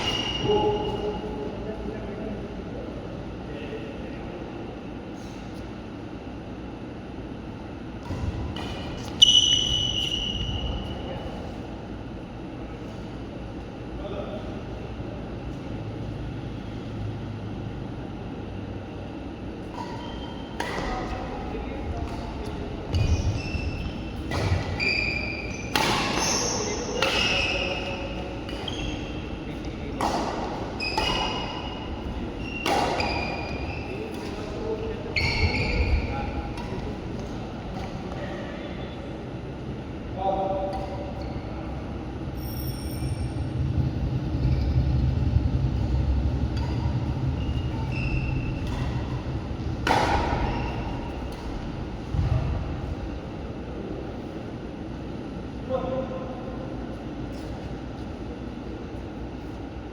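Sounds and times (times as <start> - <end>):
shoes squeaking on court: 0.0 - 1.0, 8.1 - 11.6, 19.6 - 21.3, 21.9 - 38.4, 46.6 - 51.8
racket striking shuttlecock: 19.7 - 21.2, 24.2 - 24.8, 25.6 - 28.8, 29.6 - 34.5, 46.6 - 52.4
low rumble: 43.2 - 49.9.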